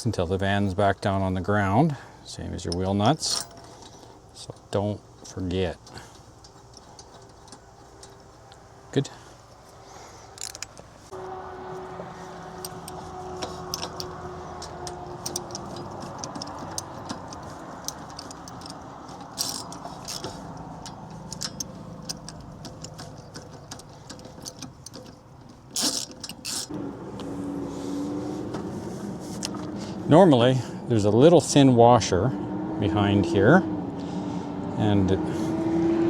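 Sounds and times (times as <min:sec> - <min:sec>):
steady background hum: 0:00.0 - 0:35.6
metallic clicks of tools: 0:10.3 - 0:10.9, 0:12.6 - 0:26.7.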